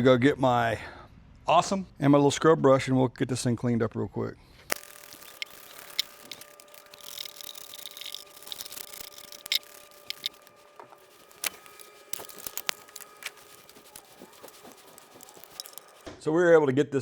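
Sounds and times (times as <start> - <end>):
hissing brush scrub: 4.7 - 16.1.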